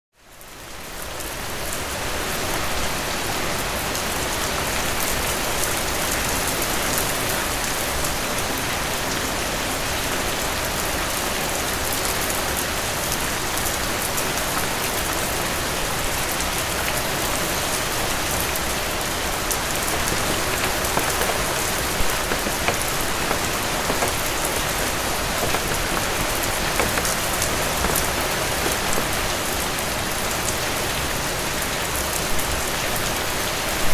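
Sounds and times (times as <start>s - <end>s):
heavy rain falling: 19.5s - 29.7s.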